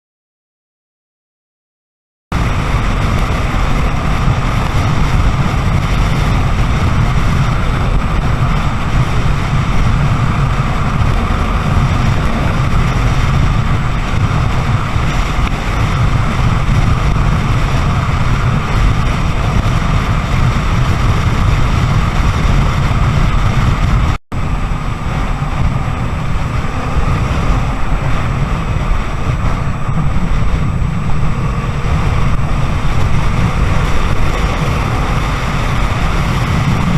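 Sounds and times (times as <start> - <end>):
motorcycle engine running: 2.3 - 36.9
road noise: 2.3 - 36.9
wind rush on microphone: 2.3 - 36.9.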